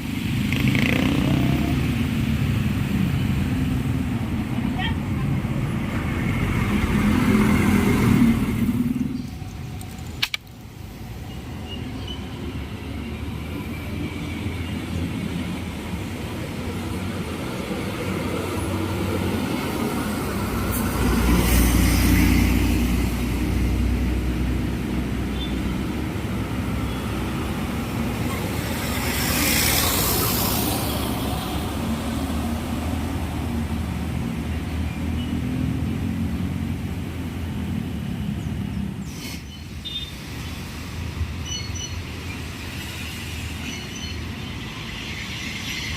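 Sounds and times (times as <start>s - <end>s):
bus diesel engines rumbling: 0.0s - 45.9s
hiss: 39.0s - 45.9s.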